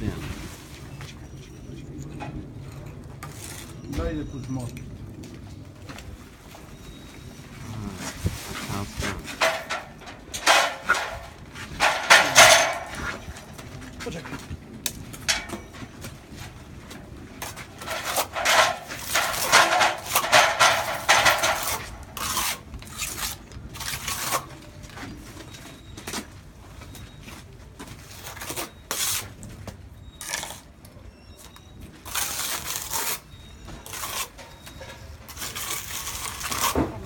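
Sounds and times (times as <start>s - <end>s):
trowel scraping on mortar: 3.2s - 3.9s, 7.8s - 13.5s, 17.4s - 24.6s, 28.0s - 29.4s, 30.2s - 30.7s, 32.0s - 37.0s.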